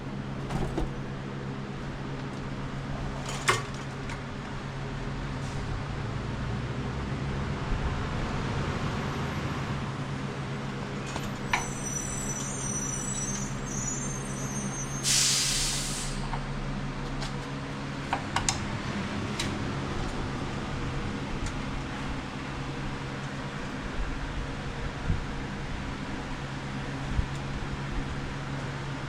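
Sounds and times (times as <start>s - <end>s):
loud hiss: 11.6s - 16.3s.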